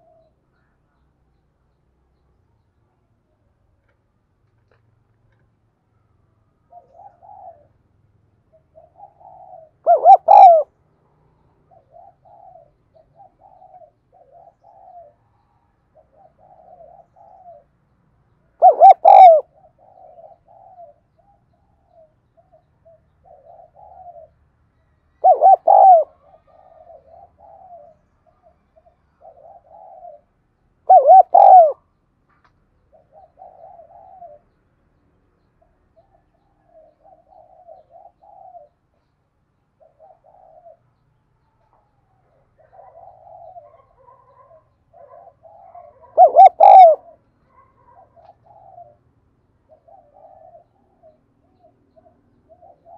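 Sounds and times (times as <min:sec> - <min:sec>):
dove cooing: 0:00.0 - 0:00.3, 0:06.7 - 0:07.8, 0:08.5 - 0:10.7, 0:11.6 - 0:15.3, 0:15.9 - 0:17.7, 0:18.6 - 0:24.4, 0:25.2 - 0:30.3, 0:30.9 - 0:31.8, 0:32.9 - 0:34.5, 0:36.0 - 0:38.8, 0:39.8 - 0:40.8, 0:41.7 - 0:49.0, 0:49.7 - 0:52.9.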